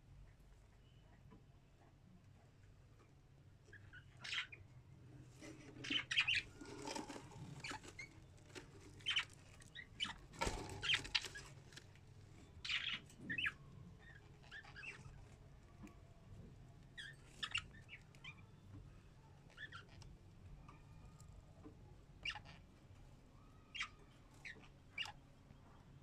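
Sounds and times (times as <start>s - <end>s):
budgerigars chirping: 3.7s - 4.6s, 5.8s - 8.1s, 9.0s - 11.4s, 12.6s - 15.2s, 17.0s - 18.4s, 19.6s - 20.0s, 22.2s - 22.6s, 23.7s - 25.2s
wings fluttering: 5.8s - 12.0s.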